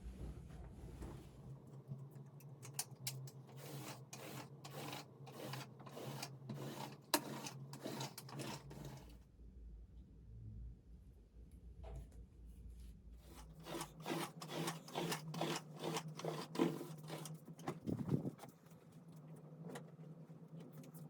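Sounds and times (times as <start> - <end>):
steady low hum: 0.0 - 1.7
scraping strokes: 3.6 - 9.0.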